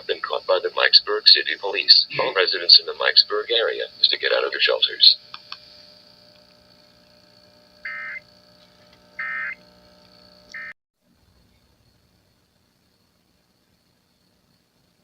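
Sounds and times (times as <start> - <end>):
faint steady hum: 0.0 - 15.0
digital data tone bursts: 7.8 - 8.3, 9.2 - 9.6, 10.5 - 10.8.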